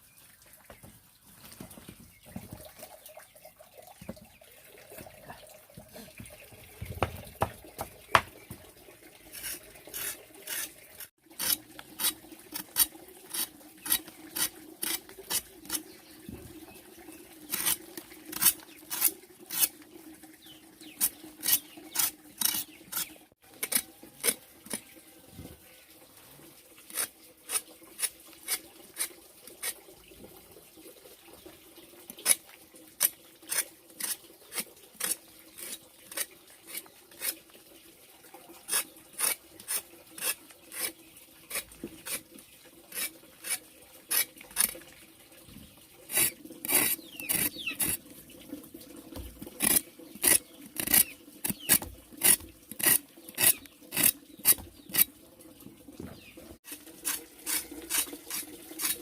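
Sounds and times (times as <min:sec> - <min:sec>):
hand tool scraping strokes: 0:09.3 - 0:15.8, 0:17.5 - 0:19.7, 0:21.0 - 0:24.8, 0:26.9 - 0:29.8, 0:38.7 - 0:42.2, 0:42.9 - 0:44.8, 0:46.1 - 0:48.0, 0:49.6 - 0:55.1, 0:56.6 - 0:59.0.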